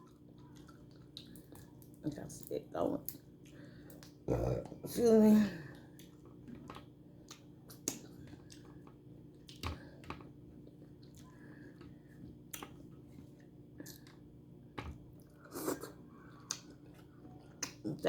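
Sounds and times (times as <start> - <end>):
chewing shrimp shells: 0.0 - 2.0, 5.8 - 14.3
faint steady hum: 0.0 - 18.0.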